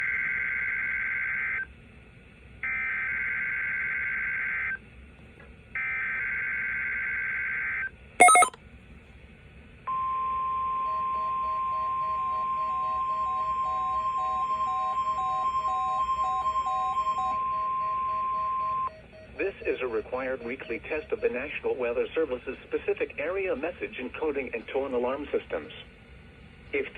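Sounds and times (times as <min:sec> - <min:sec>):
steady alert tone: 0:08.2 - 0:08.5
warbling digital data tones: 0:08.2 - 0:08.5
quick repeated beeps: 0:08.2 - 0:08.6
short loud beep: 0:08.2 - 0:08.6.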